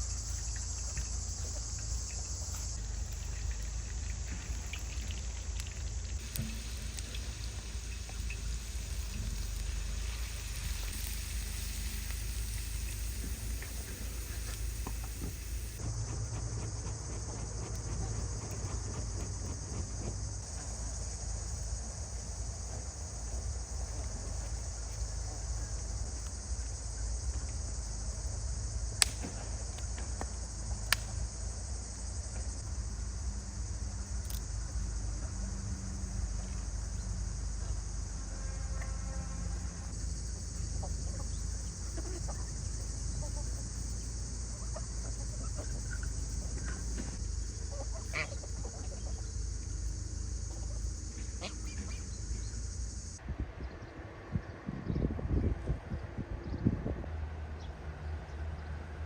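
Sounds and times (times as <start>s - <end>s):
steady high hiss: 0.0s - 15.8s
chickens clucking: 40.8s - 43.6s, 47.7s - 49.3s.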